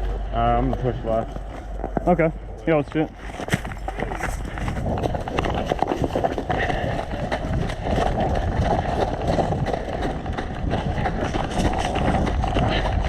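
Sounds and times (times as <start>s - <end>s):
continuous noisy rush: 0.0s - 13.0s
footsteps: 0.0s - 13.0s
gear rustling and knocking: 3.2s - 13.0s.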